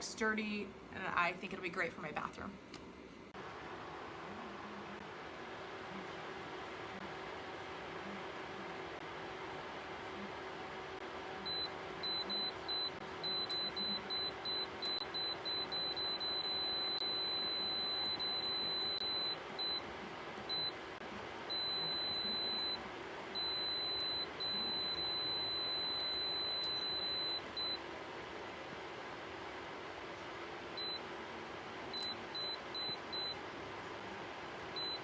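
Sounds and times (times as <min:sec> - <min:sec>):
fan heater humming: 0:00.0 - 0:35.0.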